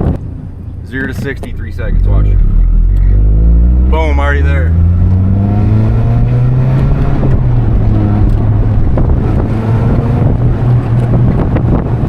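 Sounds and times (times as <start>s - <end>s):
car engine running: 0.0s - 12.0s
wind and road noise: 0.0s - 12.0s.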